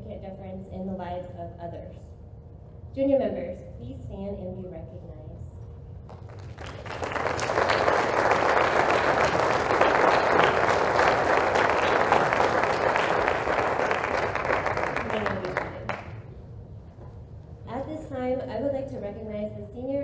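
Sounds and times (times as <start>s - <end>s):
audience applauding: 6.1s - 16.3s.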